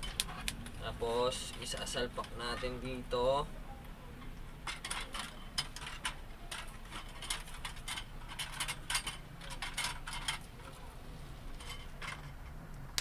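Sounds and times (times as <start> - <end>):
clicking and rattling: 4.6 - 10.8.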